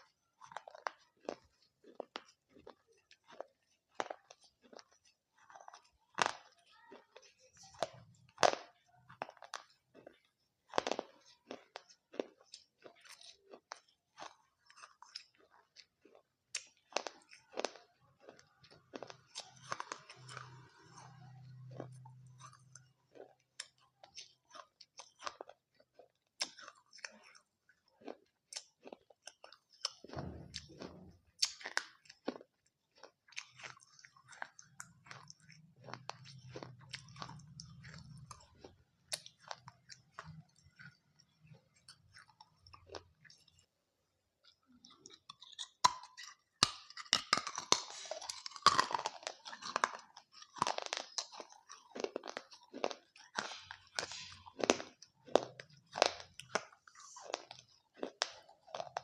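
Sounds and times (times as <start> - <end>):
crunchy chewing: 0.0 - 43.8, 44.4 - 59.0
wet mouth sounds: 33.0 - 43.7, 44.4 - 59.0.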